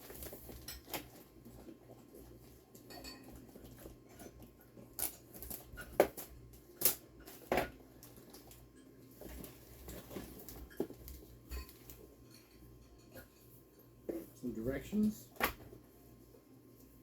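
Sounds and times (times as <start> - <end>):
packaging rustling: 0.0 - 1.7.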